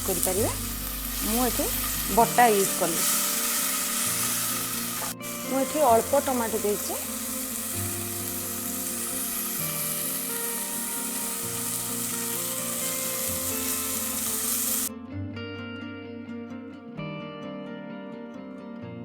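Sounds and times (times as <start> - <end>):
paste sizzling in hot oil: 0.0 - 14.9
soft plucked-string music: 0.0 - 19.0.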